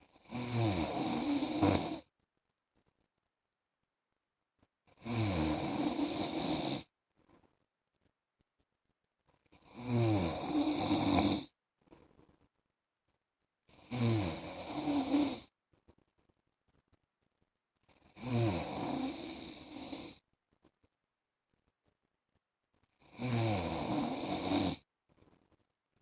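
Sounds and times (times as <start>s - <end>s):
man snoring: 0.2s - 2.0s, 5.0s - 6.8s, 9.7s - 11.5s, 13.8s - 15.5s, 18.2s - 20.2s, 23.1s - 24.8s.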